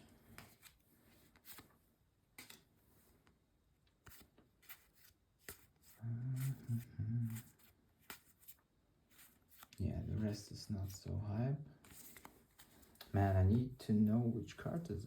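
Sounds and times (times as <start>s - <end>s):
cards being flipped by hand: 0.2s - 10.3s, 11.8s - 13.2s
low voice murmuring: 6.0s - 7.5s.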